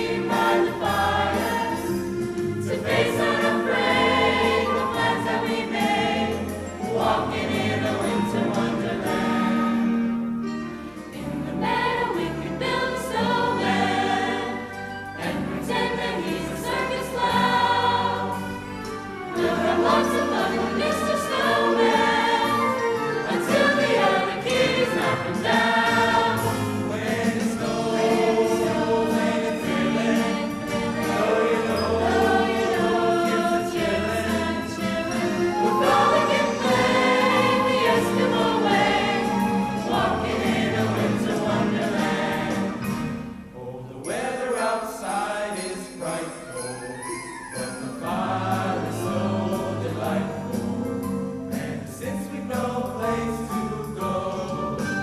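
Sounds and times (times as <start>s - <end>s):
choir singing: 0.0s - 10.4s, 11.0s - 55.0s
musical accompaniment: 0.0s - 55.0s.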